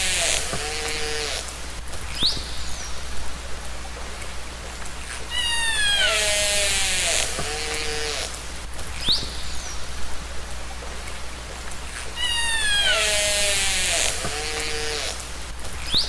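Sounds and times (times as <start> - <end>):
steady hiss: 0.0 - 16.0
orca calls underwater: 5.3 - 6.8, 12.1 - 14.1.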